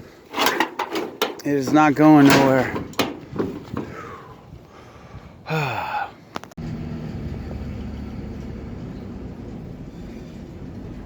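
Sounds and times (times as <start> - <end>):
vehicle engine running: 6.6 - 11.0.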